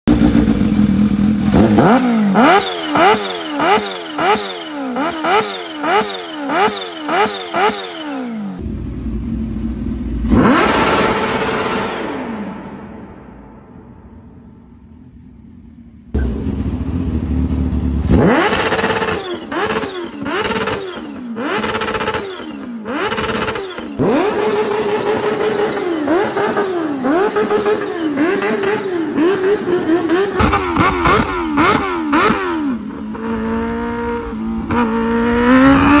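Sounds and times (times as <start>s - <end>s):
motorcycle engine revving: 0.1s - 36.0s.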